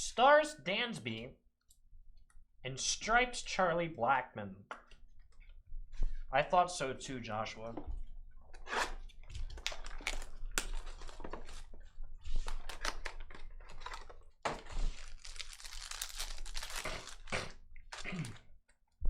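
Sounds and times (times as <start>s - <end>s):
wrapper crinkling and tearing: 9.3s - 11.8s, 12.4s - 18.4s.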